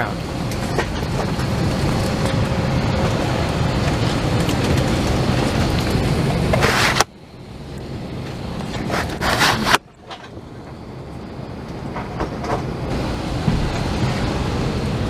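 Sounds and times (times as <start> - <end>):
cabin air rushing: 11.3 - 15.0.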